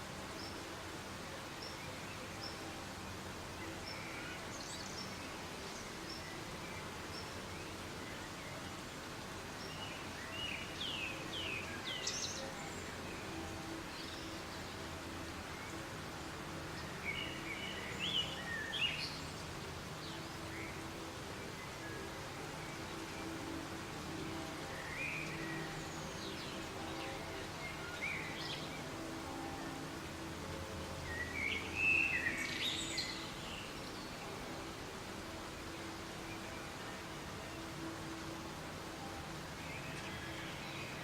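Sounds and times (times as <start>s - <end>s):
soft rain falling: 0.0s - 41.0s.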